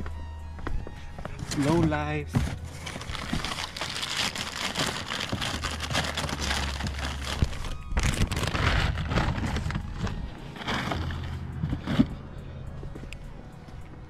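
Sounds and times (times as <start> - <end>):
low hum: 0.0 - 14.0
packaging crinkling and rustling: 1.4 - 11.3.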